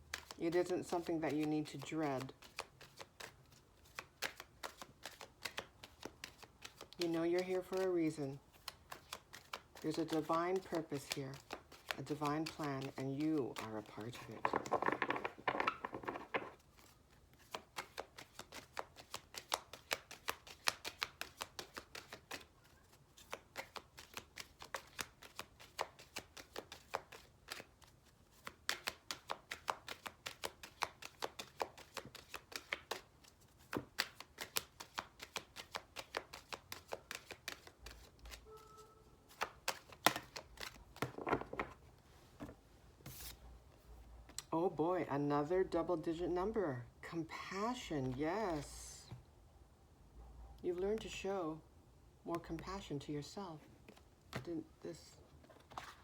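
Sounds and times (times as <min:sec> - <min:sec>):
cards shuffling clicks: 0:00.1 - 0:38.4, 0:39.3 - 0:41.8.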